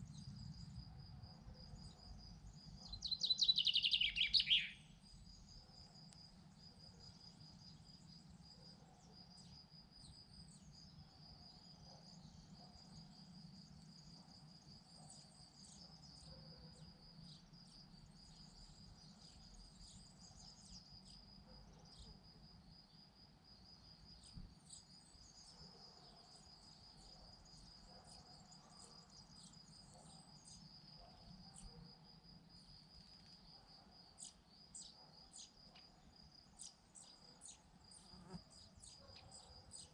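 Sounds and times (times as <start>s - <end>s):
faint high chirps: 2.8s - 5.0s.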